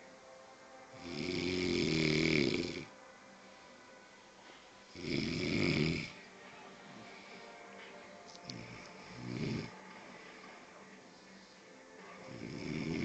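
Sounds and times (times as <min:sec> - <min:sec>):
person snoring: 0:00.9 - 0:02.9, 0:04.9 - 0:06.3, 0:08.4 - 0:09.8, 0:12.2 - 0:13.0.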